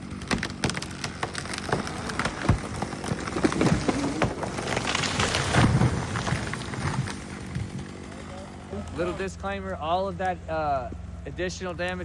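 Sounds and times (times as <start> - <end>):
tree crashing down: 0.0 - 9.0
tree cracking and branches snapping: 0.0 - 9.3.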